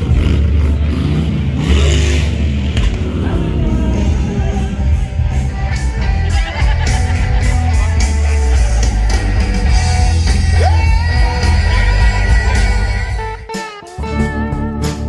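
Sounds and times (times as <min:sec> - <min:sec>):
distorted guitars: 0:00.0 - 0:15.0
hard rock music: 0:00.0 - 0:15.0
heavy bass: 0:00.0 - 0:15.0
person yelling vocals: 0:03.1 - 0:05.2, 0:08.6 - 0:13.4.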